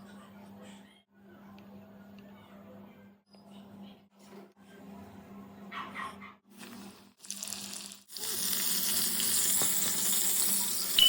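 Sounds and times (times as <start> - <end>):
chicken deep-frying in oil: 7.2 - 11.0.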